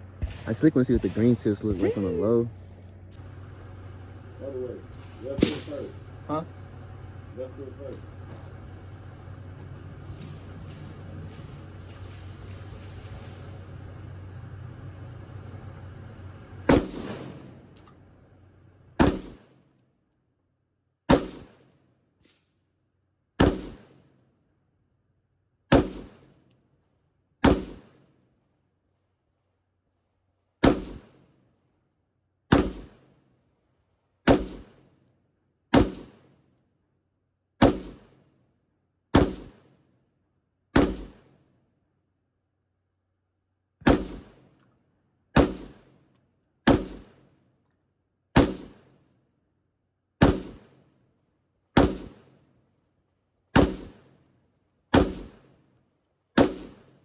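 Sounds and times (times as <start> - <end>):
gunshots: 0.0 - 2.5, 3.7 - 8.9, 9.6 - 14.3, 16.6 - 17.9, 19.0 - 19.6, 21.1 - 21.8, 23.4 - 24.0, 25.7 - 26.4, 27.4 - 28.1, 30.6 - 31.2, 32.5 - 33.1, 34.3 - 34.8, 35.7 - 36.4, 37.6 - 38.2, 39.1 - 39.7, 40.8 - 41.4, 43.8 - 44.6, 45.4 - 46.0, 46.7 - 47.3, 48.4 - 49.0, 50.2 - 50.8, 51.8 - 52.4, 53.6 - 54.1, 54.9 - 55.6, 56.4 - 57.0.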